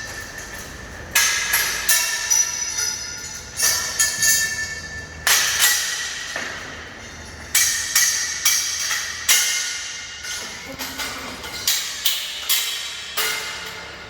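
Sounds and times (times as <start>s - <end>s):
metal scaffolding clanking: 0.0s - 14.0s.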